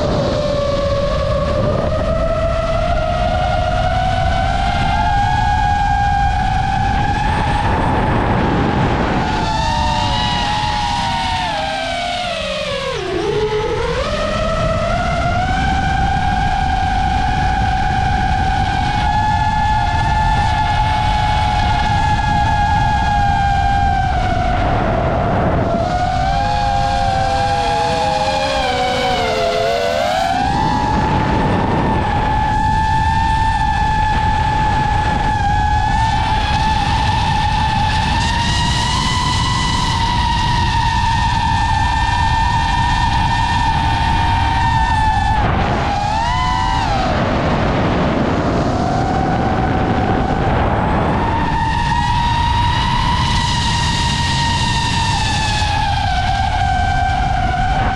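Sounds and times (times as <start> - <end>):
drone propellers whining: 0.0 - 57.9
low wind rumble: 0.0 - 57.9.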